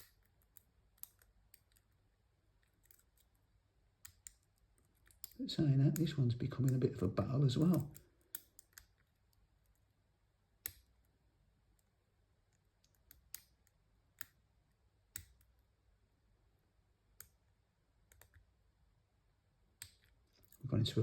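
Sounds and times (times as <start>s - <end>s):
lock pick clicking: 7.6s - 9.8s.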